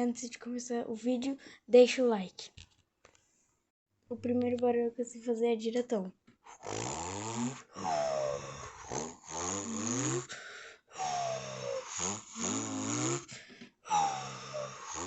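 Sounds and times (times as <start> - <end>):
person imitating truck exhaust: 6.5 - 10.3, 10.9 - 15.0.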